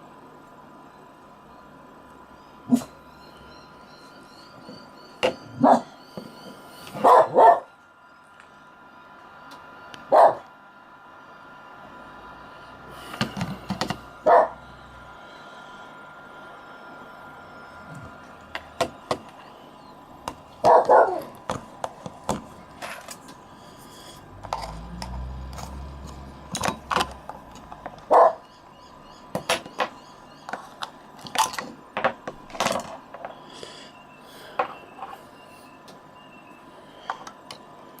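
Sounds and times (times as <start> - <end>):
dog barking: 5.6 - 6.0, 7.0 - 7.7, 10.1 - 10.4, 14.2 - 14.6, 20.6 - 21.3, 28.1 - 28.4.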